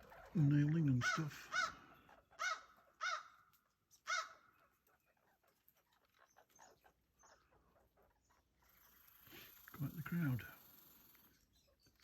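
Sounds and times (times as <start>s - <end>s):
blue jay harsh calls: 0.0s - 5.4s.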